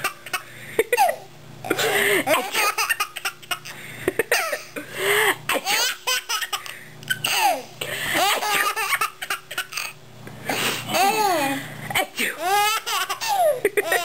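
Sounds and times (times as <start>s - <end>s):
baby laughing: 0.0s - 4.8s, 5.5s - 10.0s, 12.4s - 14.0s.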